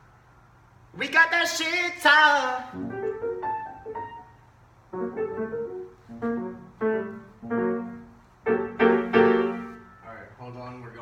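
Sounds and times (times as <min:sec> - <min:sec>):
piano note: 0:02.8 - 0:10.2
piano chords ringing: 0:02.8 - 0:10.4.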